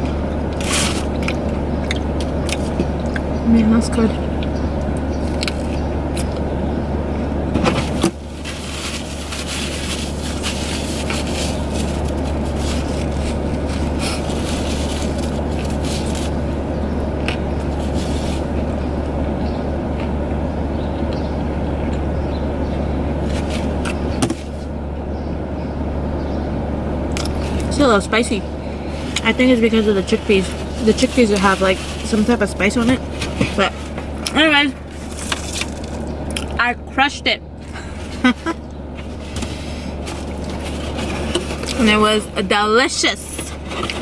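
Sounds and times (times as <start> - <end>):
low hum in car cabin: 0.0 - 44.0
food wrapping rustling: 0.5 - 3.0, 7.5 - 16.8, 17.6 - 18.7, 23.2 - 24.7, 27.2 - 27.8, 28.4 - 36.3, 37.9 - 44.0.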